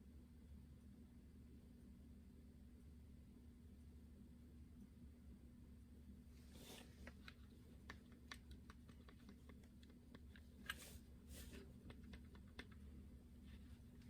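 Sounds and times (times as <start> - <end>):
low steady hum: 0.0 - 14.0.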